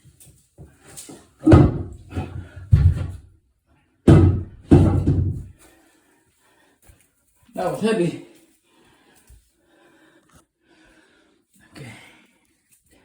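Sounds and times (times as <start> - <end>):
porcelain toilet thumping on hard surfaces: 1.4 - 3.3, 4.1 - 5.5.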